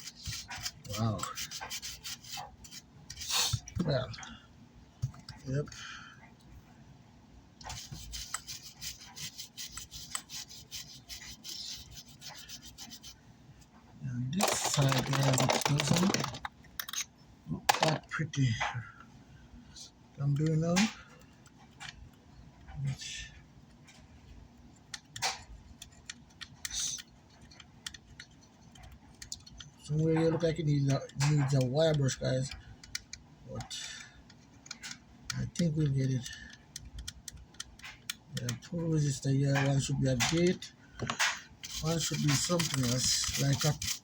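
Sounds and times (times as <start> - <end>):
brush scrubbing circuit board: 0.0 - 3.7, 7.6 - 13.2, 41.6 - 44.0
light clicks and taps: 24.8 - 44.0.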